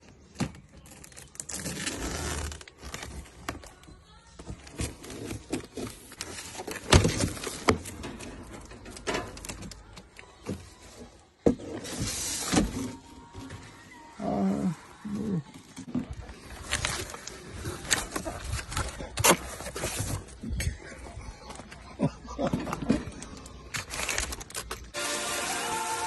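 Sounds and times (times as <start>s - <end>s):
parts knocking and clattering: 6.8s - 10.7s
packaging rustling: 23.2s - 24.9s.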